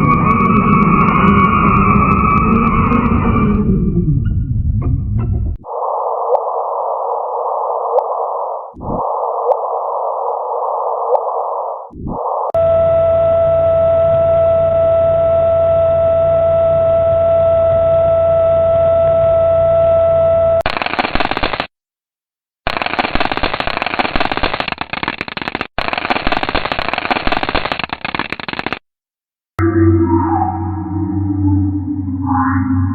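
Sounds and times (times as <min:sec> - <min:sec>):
low hum: 0:00.0 - 0:20.6, 0:29.6 - 0:32.9
dense rapid crackling and clicking: 0:20.6 - 0:21.7, 0:22.6 - 0:28.9.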